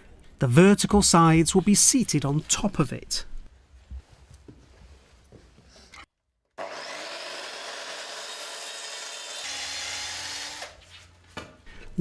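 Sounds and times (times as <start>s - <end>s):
saw cutting timber: 6.6s - 10.8s.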